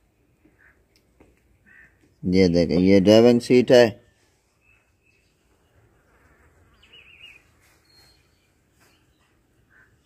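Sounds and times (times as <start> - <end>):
faint outdoor background: 0.0 - 10.0.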